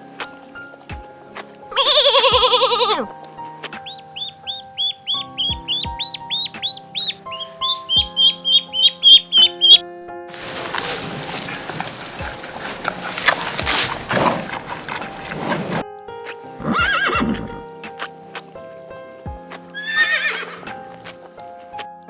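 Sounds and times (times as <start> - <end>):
background music: 0.0 - 22.0
horse whinnying: 1.7 - 3.1, 10.4 - 15.8, 16.6 - 17.6, 19.8 - 20.7
horse hoofbeats galloping: 3.9 - 15.8, 16.6 - 17.6.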